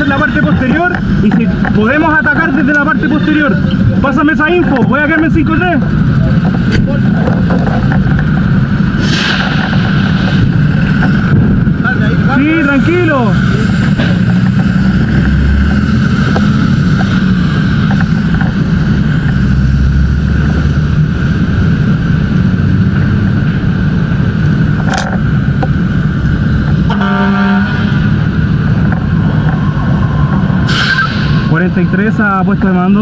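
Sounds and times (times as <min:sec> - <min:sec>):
fire engine running: 0:00.0 - 0:33.0
short pitched horn toot: 0:26.8 - 0:28.0.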